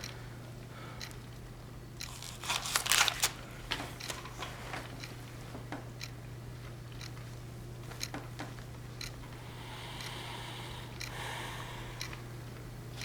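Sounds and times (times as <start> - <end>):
steady low hum: 0.0 - 13.0
rustling and crinkling: 2.1 - 5.0.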